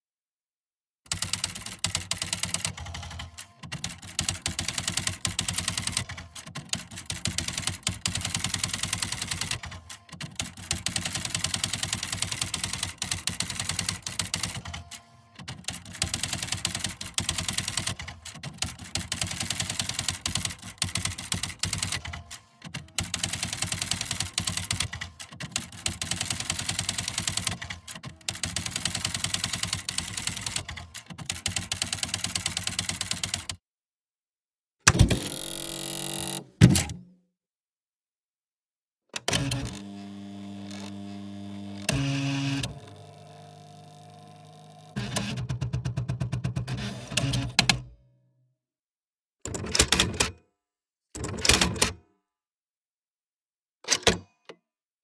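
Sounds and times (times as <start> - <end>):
typewriter key strikes: 34.9 - 37.0
typewriter motor hum: 34.9 - 37.0, 39.3 - 45.4.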